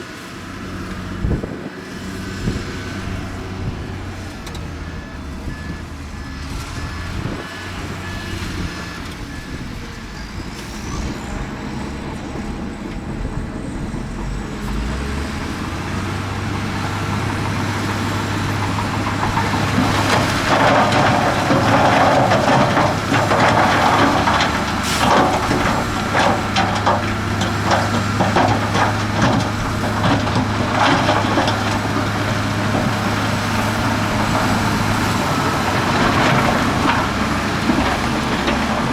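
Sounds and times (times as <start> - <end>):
heavy diesel machinery running: 0.0 - 38.9
rock and dirt clattering: 11.0 - 38.9.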